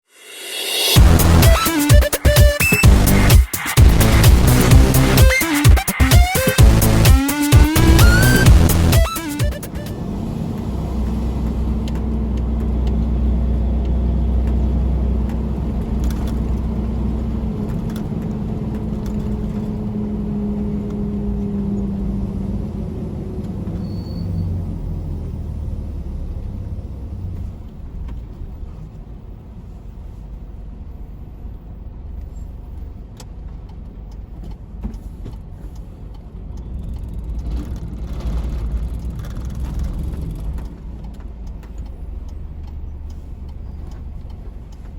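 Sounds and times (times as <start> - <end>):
diesel engine droning: 6.6 - 27.7.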